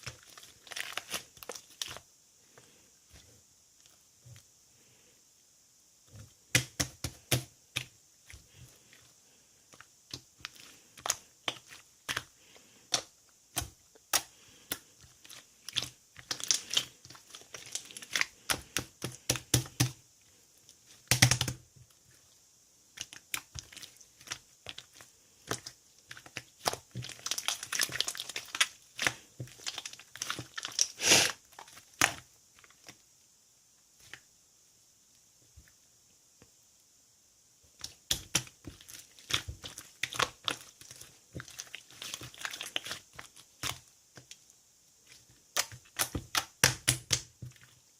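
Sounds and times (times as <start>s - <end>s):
slime clicking and popping: 15.7s - 20.0s, 21.1s - 21.6s, 37.8s - 43.8s, 45.5s - 47.4s.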